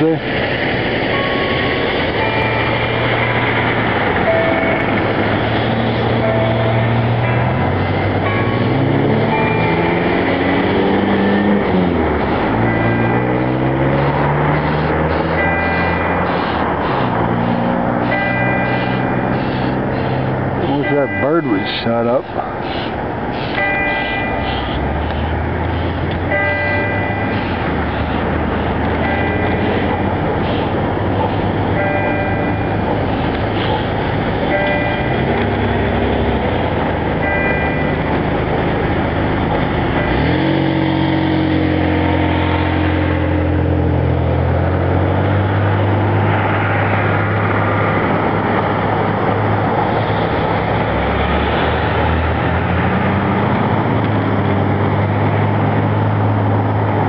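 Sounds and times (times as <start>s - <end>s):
passing train rumble: 0.0s - 57.0s
church bells playing a tune: 1.0s - 11.5s, 15.3s - 16.3s, 18.1s - 19.3s, 20.7s - 22.2s, 23.6s - 24.5s, 26.3s - 27.3s, 28.9s - 30.2s, 31.8s - 32.9s, 34.5s - 35.3s, 37.2s - 38.1s.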